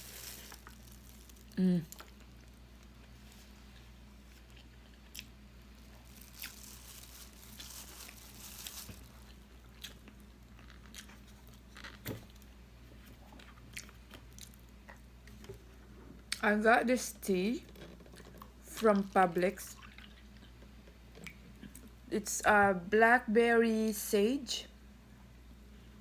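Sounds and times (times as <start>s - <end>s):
person chewing food: 0.0s - 12.4s, 13.1s - 15.5s, 19.8s - 21.9s
steady low hum: 0.0s - 26.0s.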